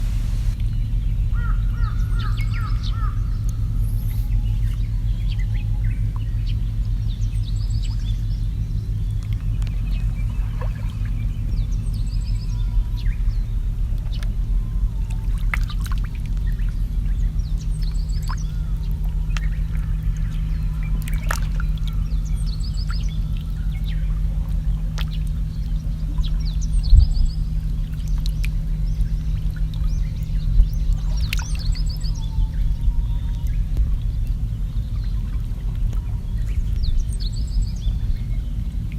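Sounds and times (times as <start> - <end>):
small birds chirping: 0.0 - 38.9
steady low rumble: 0.0 - 38.9
trickling lapping water: 0.0 - 38.9
splashes: 9.2 - 12.3, 15.0 - 16.8, 17.8 - 32.2.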